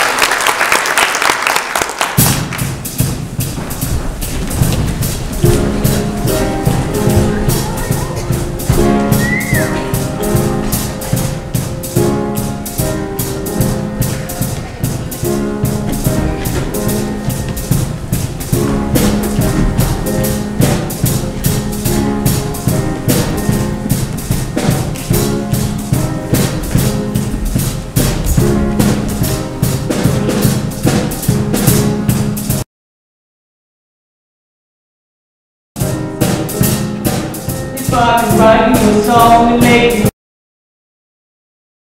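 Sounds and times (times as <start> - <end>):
drum kit beat: 2.0 - 32.6, 35.8 - 40.1
upbeat instrumental music: 2.2 - 32.6, 35.8 - 40.1
low bass notes: 3.2 - 32.4.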